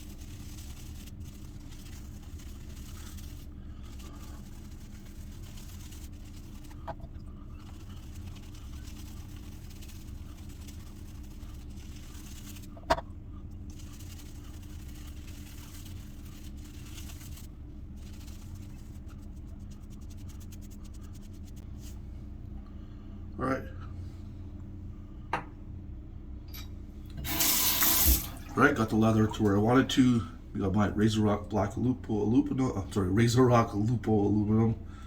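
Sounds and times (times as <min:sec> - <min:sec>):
shaving brush swishing lather: 0:00.0 - 0:12.8, 0:13.6 - 0:22.0, 0:27.3 - 0:30.2
steady low hum: 0:00.0 - 0:35.0.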